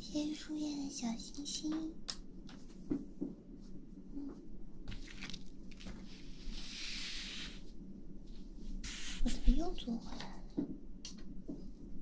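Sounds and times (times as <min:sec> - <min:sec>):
gentle hiss: 0:06.1 - 0:10.4.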